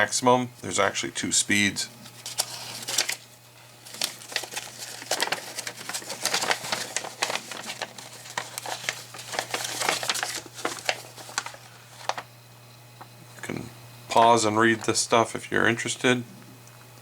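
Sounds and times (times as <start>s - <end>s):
crinkling handling noise: 2.0s - 12.3s.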